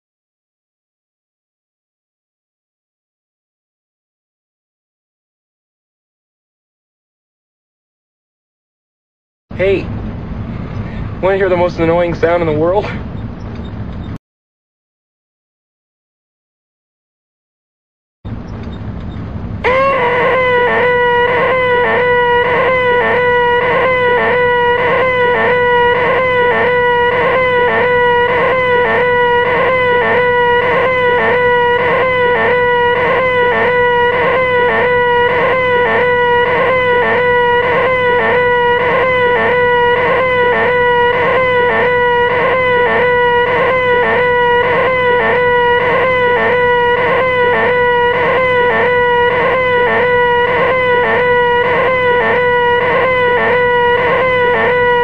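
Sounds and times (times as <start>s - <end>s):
man's nasal high-pitched scream: 19.6s - 55.0s.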